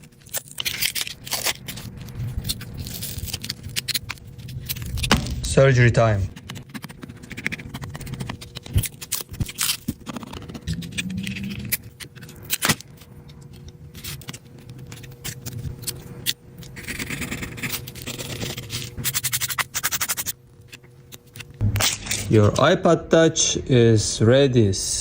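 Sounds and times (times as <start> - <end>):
small tools scraping and clicking: 0.0 - 5.2
faint steady hum: 0.0 - 25.0.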